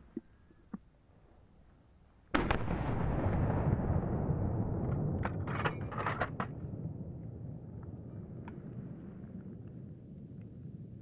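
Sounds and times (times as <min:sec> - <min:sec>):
rifle shot crack: 0:02.4 - 0:04.1
sharp cracks: 0:02.4 - 0:04.1.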